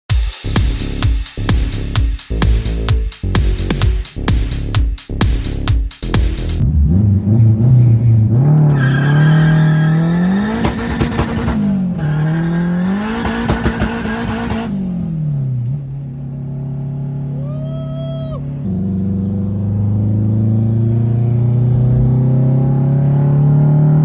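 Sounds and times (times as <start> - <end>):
car engine revving and idling: 0.5 - 24.0
engine crackle: 6.5 - 23.4.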